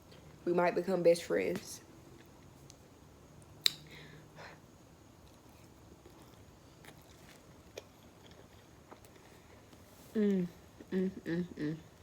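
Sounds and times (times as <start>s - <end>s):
person chewing: 5.2s - 11.0s.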